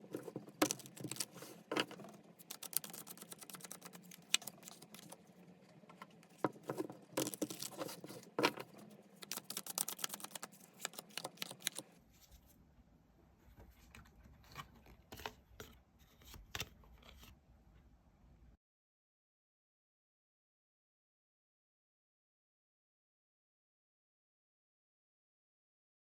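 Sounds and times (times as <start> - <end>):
cards being shuffled: 0.2 - 5.2, 6.4 - 11.9.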